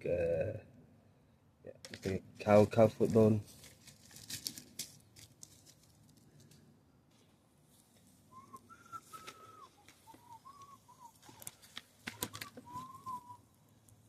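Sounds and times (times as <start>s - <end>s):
hands working in soil: 1.8s - 14.0s
person whistling a slow tune: 8.3s - 11.4s, 12.3s - 13.4s.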